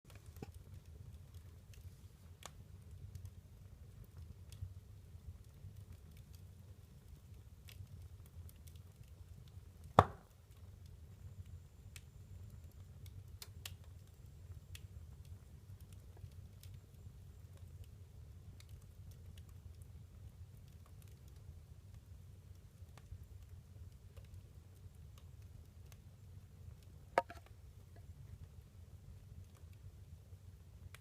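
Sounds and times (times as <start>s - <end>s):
fire crackling: 0.1s - 31.0s
fire rumbling: 0.1s - 31.0s
loud fire pop: 10.0s - 10.3s.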